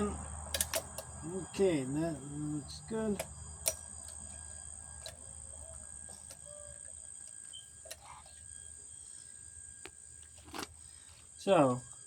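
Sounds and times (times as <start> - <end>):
insects chirring: 0.0 - 12.0
small parts clicking: 0.5 - 1.2.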